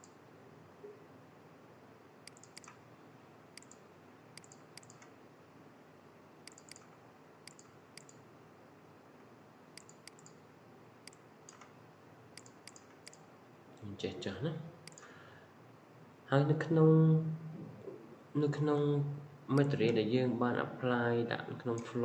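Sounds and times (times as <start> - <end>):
faint steady hiss: 0.0 - 22.0
computer mouse clicking: 2.2 - 2.8, 3.6 - 3.8, 4.4 - 5.2, 6.4 - 8.2, 9.8 - 10.4, 11.0 - 11.8, 12.4 - 13.3, 14.8 - 15.1.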